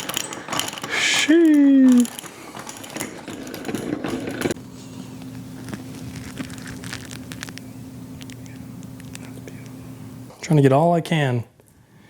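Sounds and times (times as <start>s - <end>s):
honey extractor rattling and clicking: 0.0s - 4.6s
steady low hum: 0.0s - 10.7s.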